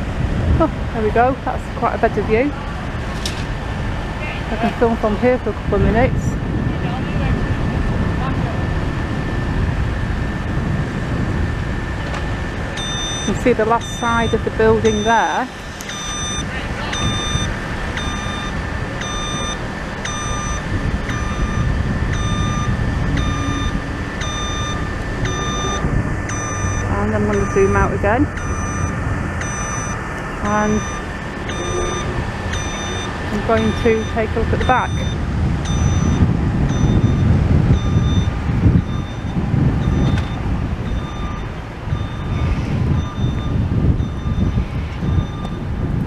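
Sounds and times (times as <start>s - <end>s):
low rumble of machinery: 0.0s - 46.0s
reversing alarm beeping: 12.7s - 45.9s.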